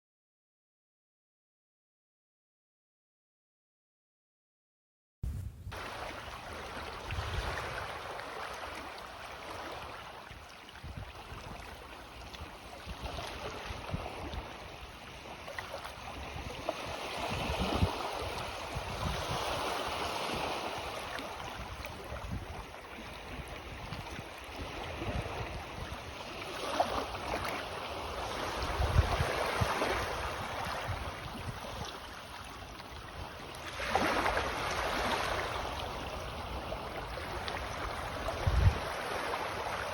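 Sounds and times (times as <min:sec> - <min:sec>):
low wind rumble on microphone: 0:05.2 - 0:05.8, 0:10.8 - 0:11.6, 0:16.1 - 0:20.8, 0:21.5 - 0:26.4, 0:28.6 - 0:32.0, 0:36.0 - 0:39.0
small waves lapping on shore: 0:05.7 - 0:39.9.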